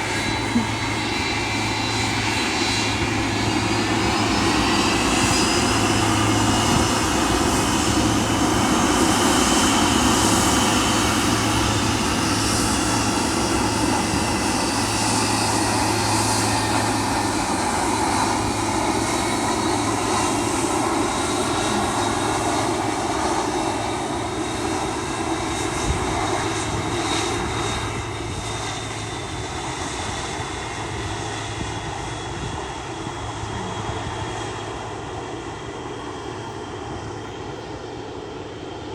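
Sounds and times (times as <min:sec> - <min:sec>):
jet engines whining: 0:00.0 - 0:38.9.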